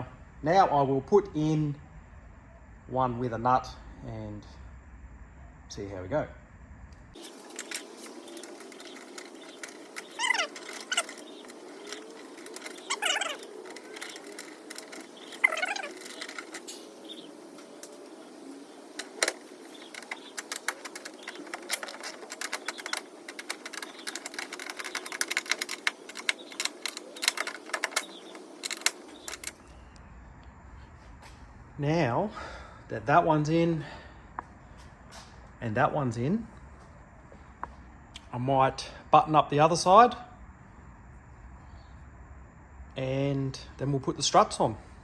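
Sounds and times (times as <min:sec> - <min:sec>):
short falling squeaks: 0:07.2 - 0:29.8
ratchet clicking: 0:18.9 - 0:29.6.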